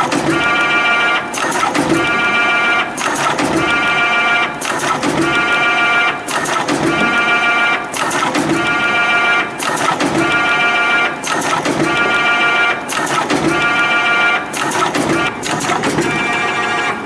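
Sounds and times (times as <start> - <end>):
machine sharp clicks: 0.0 - 17.0.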